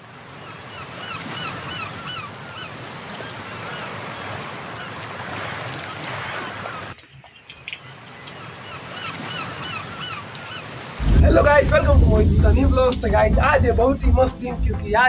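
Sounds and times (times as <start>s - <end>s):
heavy rain falling: 11.0s - 15.0s.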